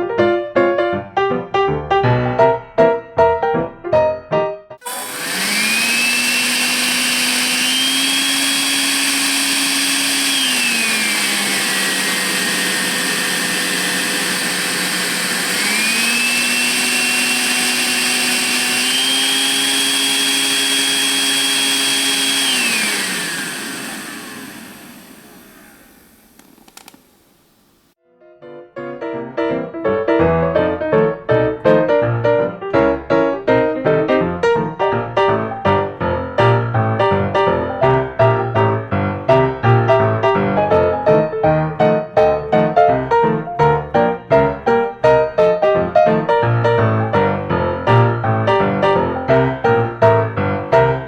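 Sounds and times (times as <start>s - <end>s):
vacuum cleaner motor whine: 4.8s - 28.0s.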